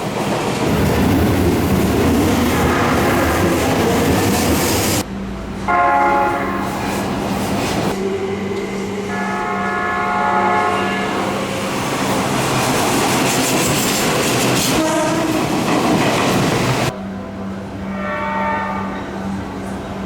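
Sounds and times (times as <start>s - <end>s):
train running past: 0.0s - 20.0s
train horn chord: 5.4s - 6.9s, 8.0s - 11.5s, 14.7s - 15.4s, 17.1s - 19.8s.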